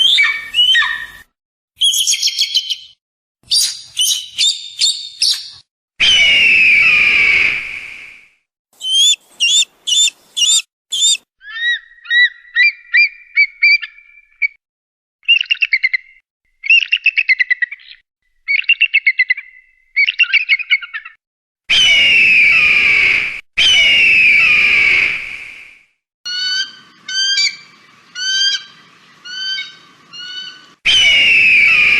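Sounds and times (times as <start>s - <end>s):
bird chirps: 0.0s - 5.6s, 8.8s - 14.6s, 26.3s - 31.9s
bird falling whistles: 3.5s - 8.2s, 8.8s - 11.2s, 21.7s - 25.8s, 29.3s - 31.9s
bird harsh screeches: 8.8s - 12.7s, 26.3s - 31.9s
bird trills: 8.8s - 14.6s, 26.3s - 31.9s.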